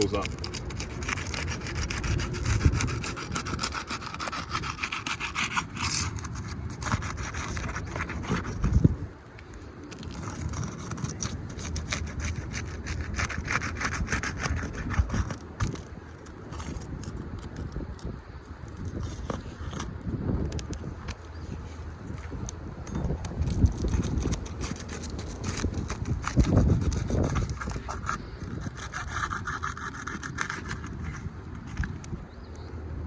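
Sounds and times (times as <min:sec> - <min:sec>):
roofing tool scraping shingles: 0:00.0 - 0:09.0, 0:23.4 - 0:32.0.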